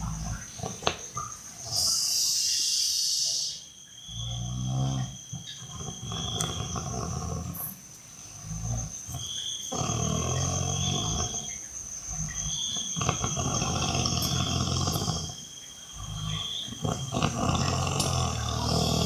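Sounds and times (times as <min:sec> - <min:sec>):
person snoring heavily: 0:09.7 - 0:11.3, 0:12.1 - 0:15.4, 0:16.0 - 0:19.0.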